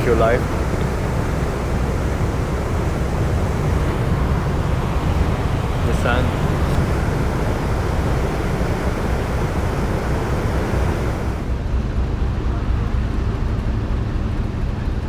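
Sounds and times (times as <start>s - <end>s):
sea noise: 0.0s - 11.7s
ship engine rumble: 0.0s - 15.0s.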